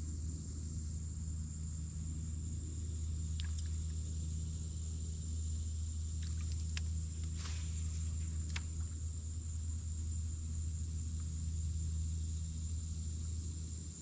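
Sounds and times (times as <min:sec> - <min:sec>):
engine running low: 0:00.0 - 0:14.0
faint ticks: 0:03.3 - 0:04.2, 0:06.2 - 0:09.0.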